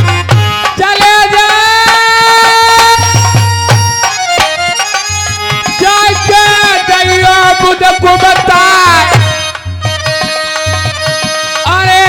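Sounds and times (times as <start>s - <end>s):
hand drum beat: 0.0s - 6.8s.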